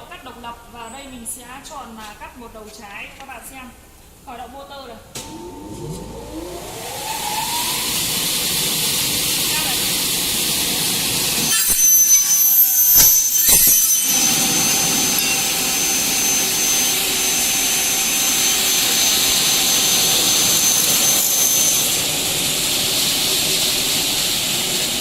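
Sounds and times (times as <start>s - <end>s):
cutting saw whining: 5.2s - 25.0s
rough uneven saw noise: 6.0s - 24.7s.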